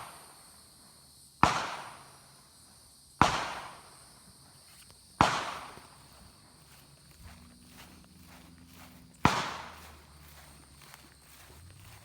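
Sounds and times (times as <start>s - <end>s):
rifle shots: 1.4s - 2.1s, 3.2s - 3.9s, 5.2s - 6.2s, 9.2s - 10.0s.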